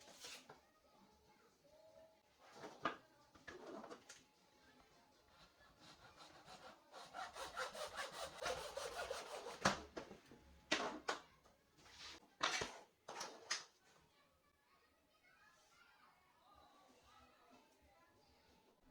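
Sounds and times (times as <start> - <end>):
sandpaper rubbing on wood: 5.8 - 9.6.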